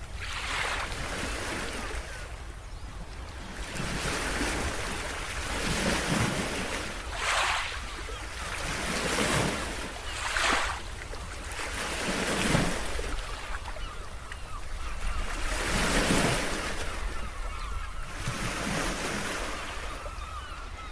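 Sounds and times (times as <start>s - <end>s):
ocean waves washing in: 3.7s - 10.9s.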